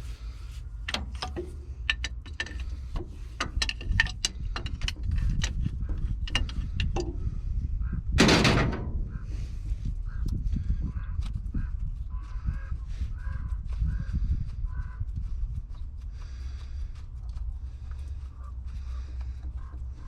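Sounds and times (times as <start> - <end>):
steady low rumble: 0.0 - 20.0
tools clinking on metal: 0.9 - 5.6.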